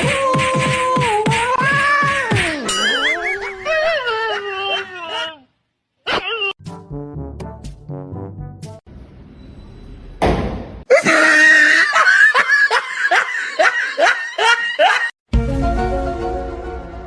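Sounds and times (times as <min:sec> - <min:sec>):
loud rhythmic laughter: 0:11.0 - 0:15.2.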